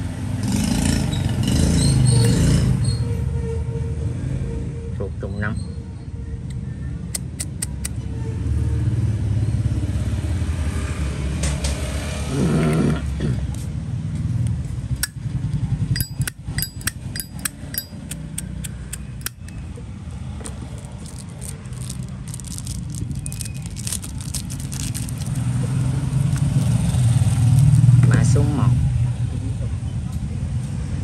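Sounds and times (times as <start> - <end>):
motorbikes: 0.0 - 5.0, 5.8 - 31.0
road traffic rumble: 0.0 - 31.0
lighter metallic clicks: 7.1 - 8.0.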